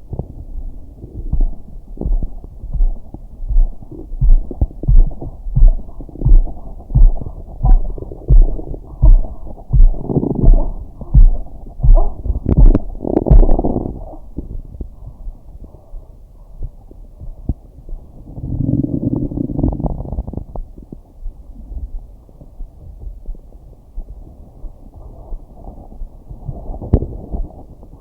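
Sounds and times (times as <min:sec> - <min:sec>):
heartbeat thudding: 0:00.0 - 0:15.4.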